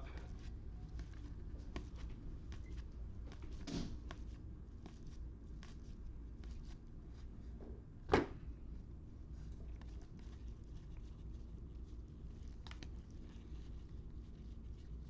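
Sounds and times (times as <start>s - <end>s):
soft thud: 8.1s - 8.4s.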